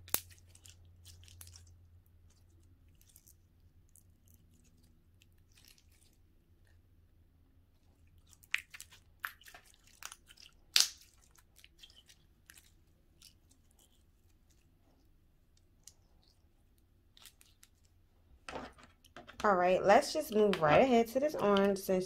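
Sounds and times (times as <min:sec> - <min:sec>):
slime squished by hands: 0:00.0 - 0:06.8, 0:07.6 - 0:18.0.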